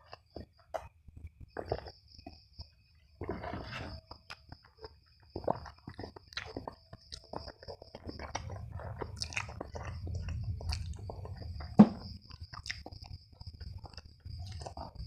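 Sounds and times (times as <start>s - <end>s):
chewing and biting food: 0.0s - 15.0s
moist mouth clicks and smacks: 4.1s - 15.0s.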